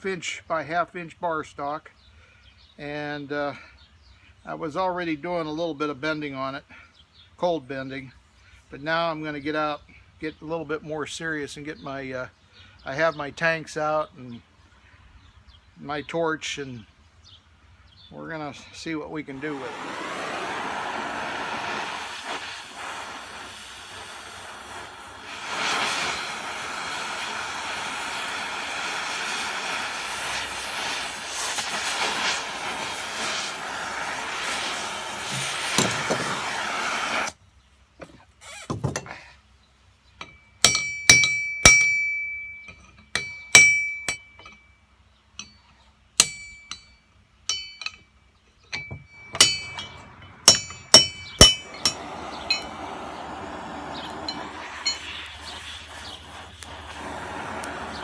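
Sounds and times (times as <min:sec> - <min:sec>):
torch flame hissing: 0:19.3 - 0:37.4, 0:49.3 - 0:58.0
hammer blows on steel bar: 0:48.8 - 0:58.0.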